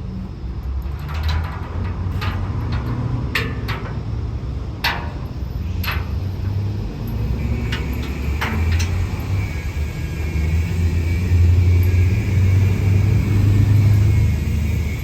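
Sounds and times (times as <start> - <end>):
steady low rumble: 0.0 - 15.0
thin high ringing tone: 3.4 - 15.0.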